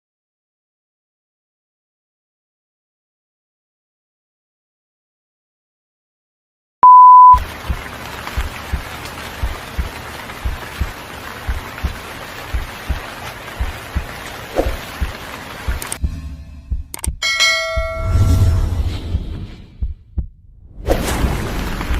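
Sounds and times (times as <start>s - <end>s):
loud steady beep: 6.8s - 7.4s
rain-like hiss: 7.4s - 16.0s, 21.0s - 21.9s
soft low thump: 16.0s - 18.4s, 19.1s - 20.5s.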